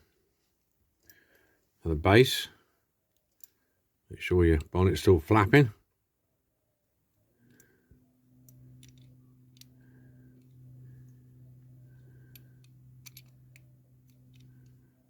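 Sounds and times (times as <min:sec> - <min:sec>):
small toy parts clicking: 0:03.1 - 0:03.6, 0:08.4 - 0:11.2, 0:11.9 - 0:14.9
steady low hum: 0:06.8 - 0:15.0.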